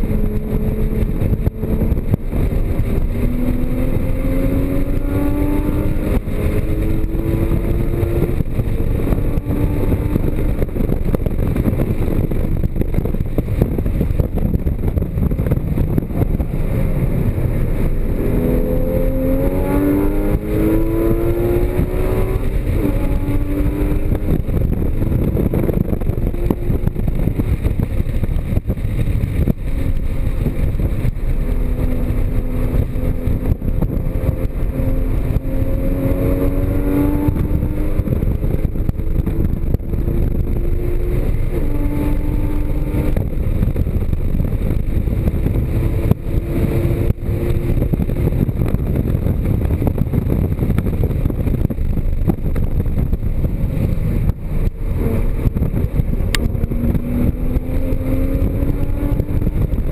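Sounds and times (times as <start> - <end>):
car engine accelerating: 0.0 - 59.9
road and wind noise: 0.0 - 59.9.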